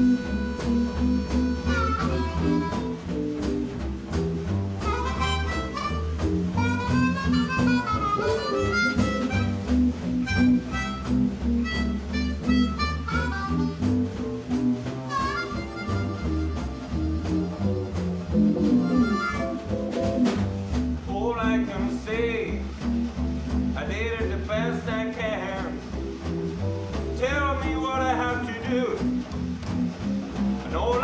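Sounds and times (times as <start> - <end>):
harmonica with bent notes: 0.0 - 3.4, 4.8 - 14.1, 15.0 - 20.3
acoustic blues band playing: 0.0 - 31.0.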